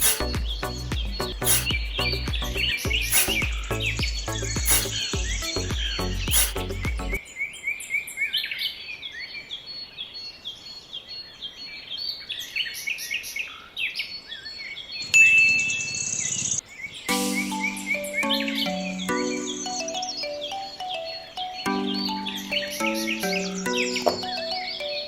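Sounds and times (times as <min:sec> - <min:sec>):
background music: 0:00.0 - 0:07.2, 0:17.1 - 0:25.0
small birds chirping: 0:00.0 - 0:25.0.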